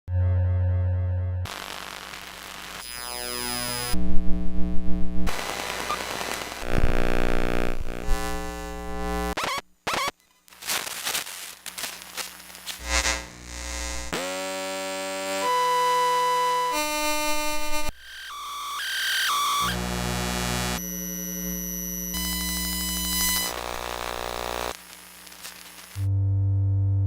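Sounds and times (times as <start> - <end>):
crackling: 1.5 - 4.0, 5.2 - 15.4, 22.2 - 26.1
electrical hum and buzz: 1.5 - 27.0.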